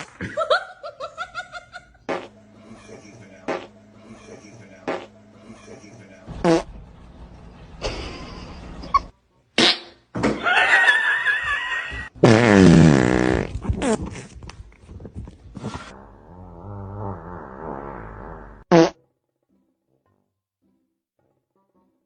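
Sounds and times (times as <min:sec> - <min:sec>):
fart noises: 0:02.1 - 0:02.4, 0:03.5 - 0:03.7, 0:04.8 - 0:05.2, 0:06.4 - 0:06.7, 0:09.6 - 0:10.0, 0:12.0 - 0:14.4, 0:16.6 - 0:19.0.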